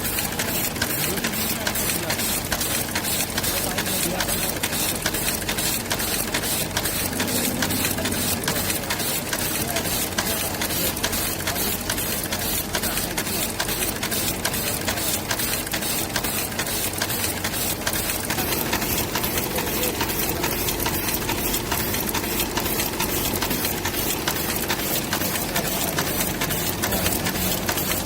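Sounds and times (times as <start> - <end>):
chain-making machine clicking: 0.0 - 28.0
steady mechanical noise: 0.0 - 28.0.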